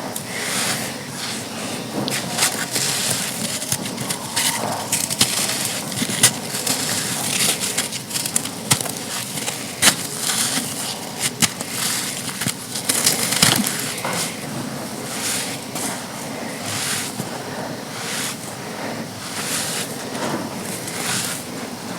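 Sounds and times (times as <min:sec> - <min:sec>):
sand chunks crunching: 0:00.7 - 0:17.2.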